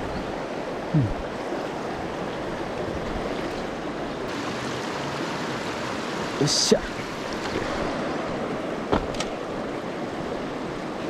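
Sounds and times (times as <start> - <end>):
river water rushing over rocks: 0.0 - 11.0
low voice: 1.0 - 1.2.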